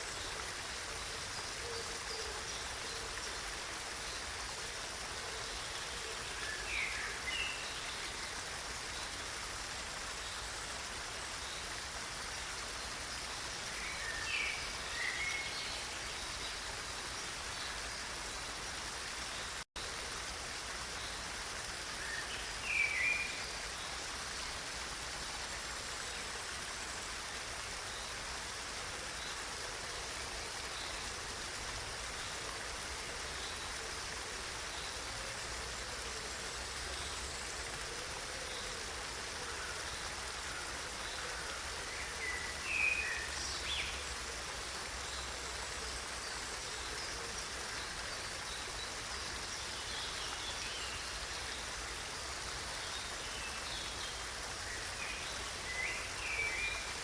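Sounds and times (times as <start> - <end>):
running water rushing: 0.0 - 57.0.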